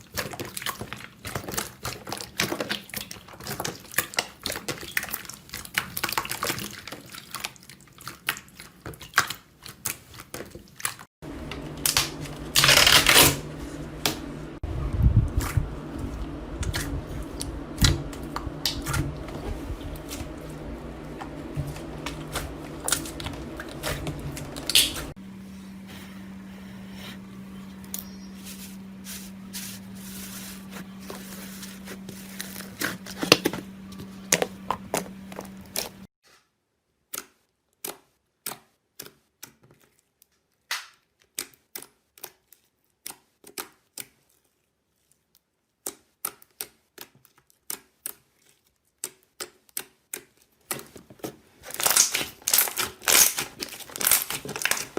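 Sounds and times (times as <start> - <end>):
low steady hum: 11.2 - 36.1.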